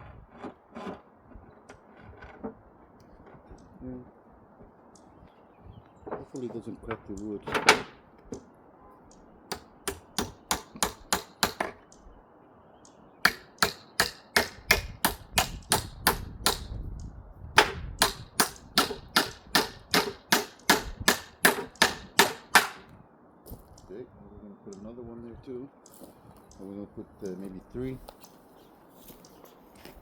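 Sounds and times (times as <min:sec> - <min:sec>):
hammer driving nails into wood: 0:07.5 - 0:08.4, 0:09.5 - 0:11.8, 0:13.2 - 0:16.8, 0:17.6 - 0:23.0.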